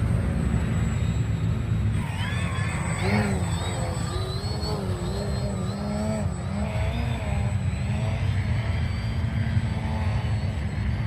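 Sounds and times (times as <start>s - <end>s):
model airplane motor: 2.0s - 7.5s.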